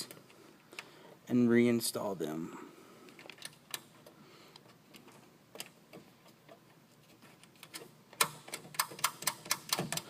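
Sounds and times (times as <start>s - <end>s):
hex nuts clicking and tapping: 7.4s - 10.0s.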